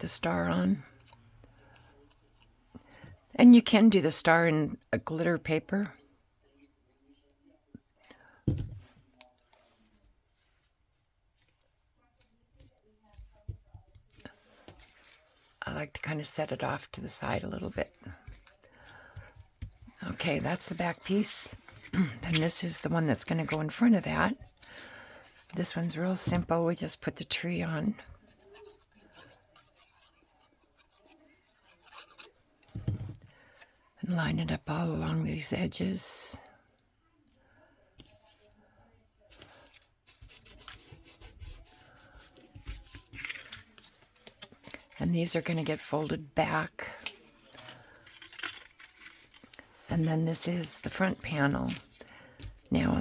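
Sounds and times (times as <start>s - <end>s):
paper rustling: 39.3s - 53.0s.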